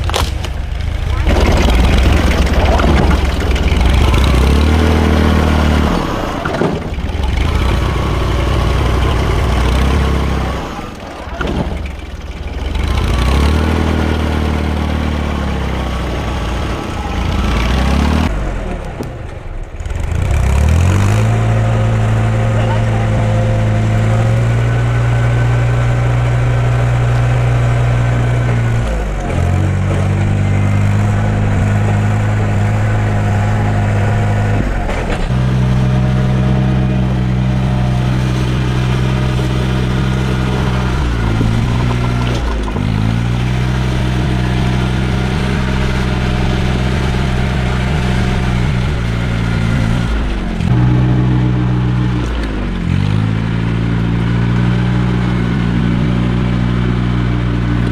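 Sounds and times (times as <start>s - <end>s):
truck engine running under load: 0.0s - 57.9s.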